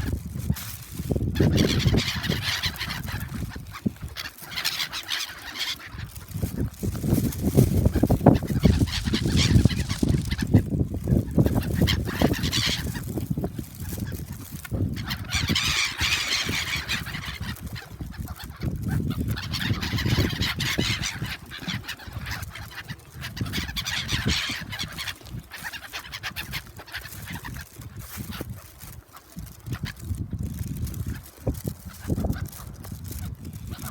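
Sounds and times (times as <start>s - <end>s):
gulls calling: 1.4s - 27.6s.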